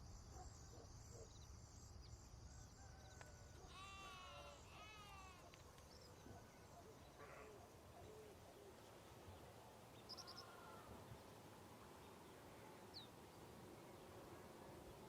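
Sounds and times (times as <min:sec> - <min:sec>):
low steady background: 0:00.0 - 0:15.0
distant bird calls: 0:03.6 - 0:15.0.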